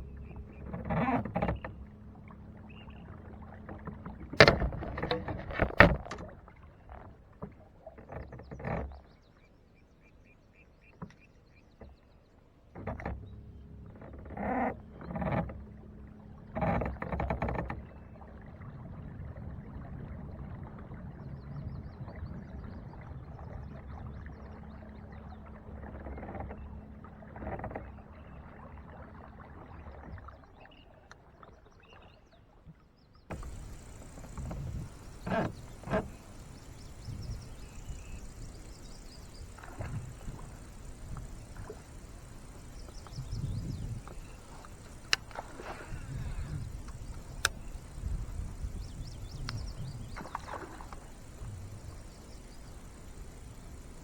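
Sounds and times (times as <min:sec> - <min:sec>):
boat motor humming: 0:00.0 - 0:06.2, 0:33.3 - 0:54.0
water: 0:00.0 - 0:54.0
wind noise: 0:33.3 - 0:54.0.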